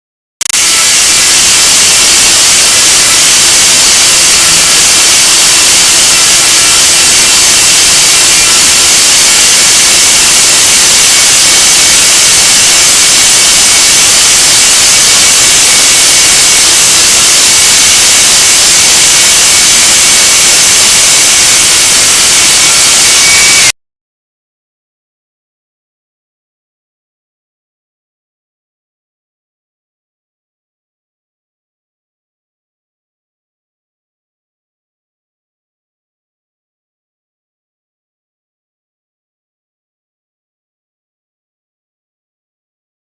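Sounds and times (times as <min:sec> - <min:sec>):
grinder hissing on metal: 0:00.6 - 0:23.5.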